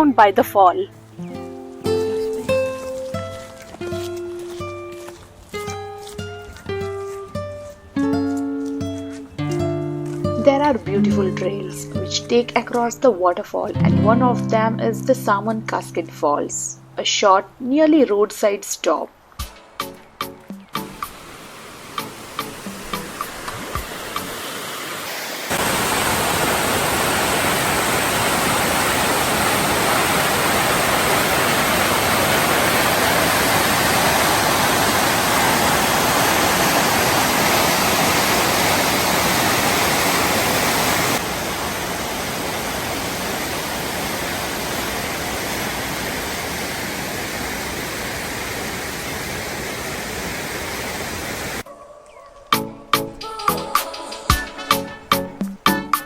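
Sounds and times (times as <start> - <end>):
waterfall rushing: 19.4 - 51.7.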